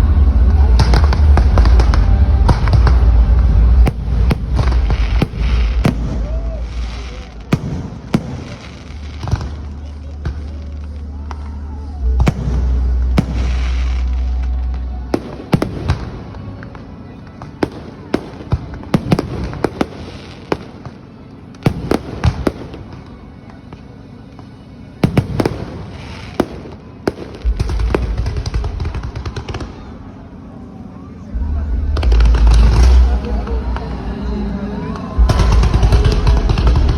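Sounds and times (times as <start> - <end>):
deep rumble: 0.0 - 19.9, 27.1 - 30.4, 31.2 - 36.9
firecrackers and fireworks banging: 0.0 - 36.9.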